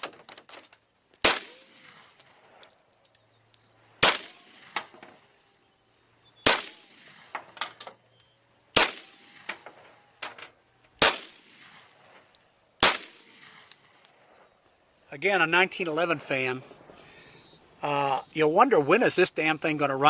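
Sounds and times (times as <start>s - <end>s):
pistol shots: 1.2s - 2.7s, 4.0s - 5.0s, 6.4s - 7.4s, 8.7s - 9.9s, 11.0s - 14.4s
light metallic clanks: 7.3s - 8.4s, 9.4s - 10.6s.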